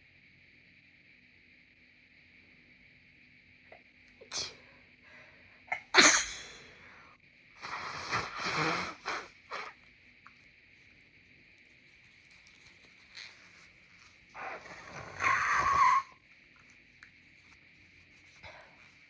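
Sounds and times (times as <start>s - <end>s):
person sneezing: 4.3s - 4.6s, 5.7s - 6.9s, 7.6s - 9.8s
noisy nasal sound: 7.6s - 9.8s, 13.1s - 16.2s.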